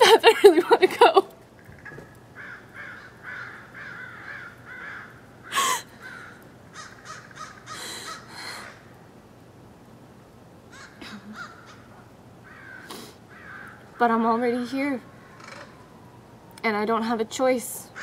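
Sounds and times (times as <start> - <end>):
birds making harsh calls: 1.5 - 8.9, 10.7 - 14.2, 15.1 - 15.8.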